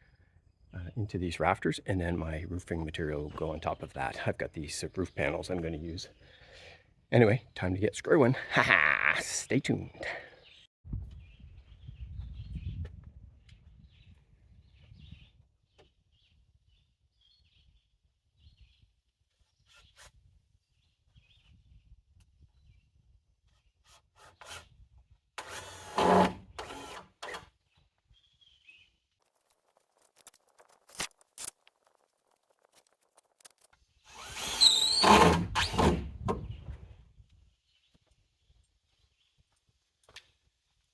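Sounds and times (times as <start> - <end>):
cordless drill driving screws: 25.4 - 27.5, 34.1 - 36.3.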